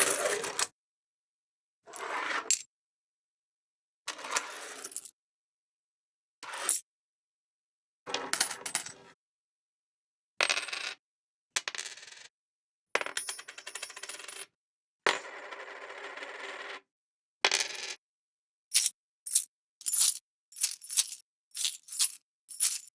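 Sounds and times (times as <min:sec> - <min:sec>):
coins dropping and clinking: 0:18.7 - 0:22.9.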